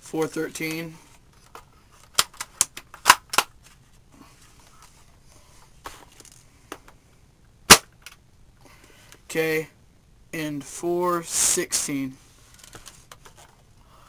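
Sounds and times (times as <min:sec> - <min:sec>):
airsoft rifle shot: 0:07.7 - 0:07.9.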